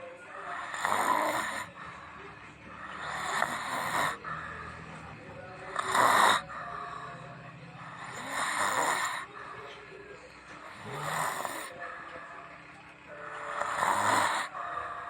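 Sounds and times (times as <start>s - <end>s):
person snoring: 0.4s - 9.6s, 10.6s - 11.9s, 13.2s - 15.0s.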